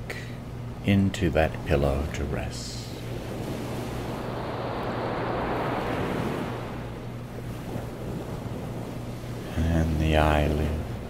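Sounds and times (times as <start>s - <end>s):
low steady hum: 0.0s - 11.0s
ocean wave washing in: 2.3s - 11.0s.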